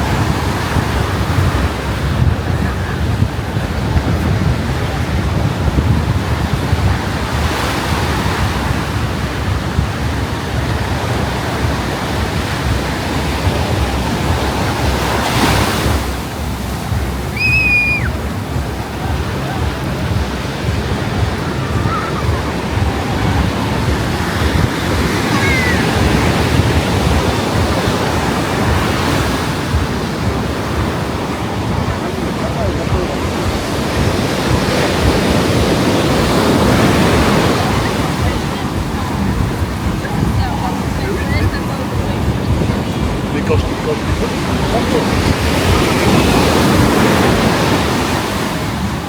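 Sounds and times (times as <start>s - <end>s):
ocean surf breaking: 0.0s - 49.0s
wind rumbling on microphone: 0.0s - 49.0s
high whistle-like tone: 17.3s - 18.3s.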